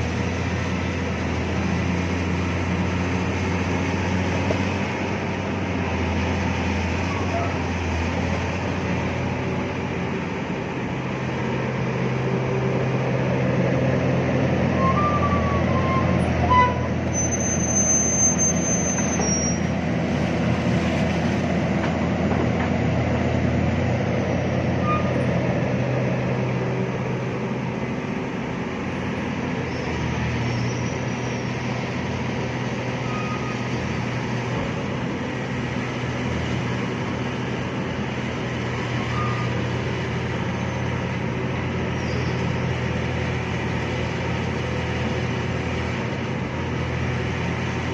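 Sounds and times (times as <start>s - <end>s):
excavator diesel engine running: 0.0s - 47.9s.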